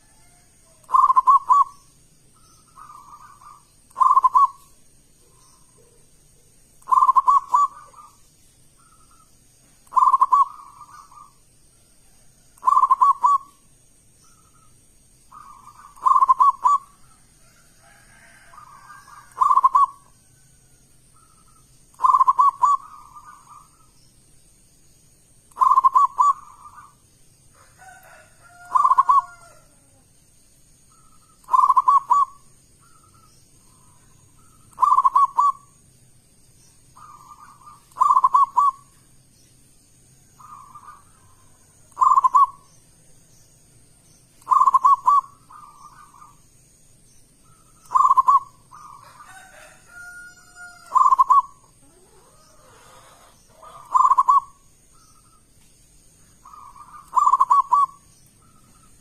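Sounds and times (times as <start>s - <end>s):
dove cooing: 0.0s - 2.0s, 2.6s - 8.2s, 8.8s - 11.4s, 12.2s - 13.6s, 15.3s - 17.3s, 18.1s - 20.3s, 21.2s - 23.9s, 25.5s - 27.0s, 27.6s - 30.1s, 30.9s - 35.8s, 37.0s - 39.0s, 40.4s - 42.7s, 44.4s - 46.4s, 47.5s - 54.6s, 56.4s - 58.9s.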